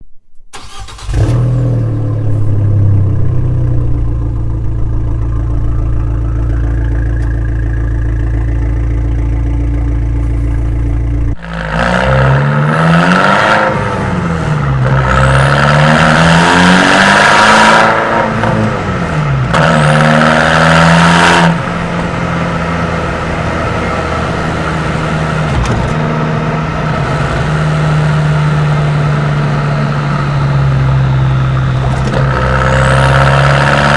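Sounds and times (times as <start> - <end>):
car engine starting and idling: 0.2 - 33.9
car engine revving: 0.5 - 33.9.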